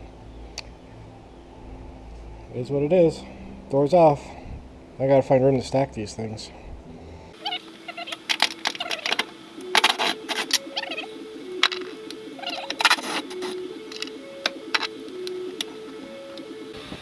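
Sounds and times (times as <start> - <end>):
simple background melody: 6.9 - 16.9.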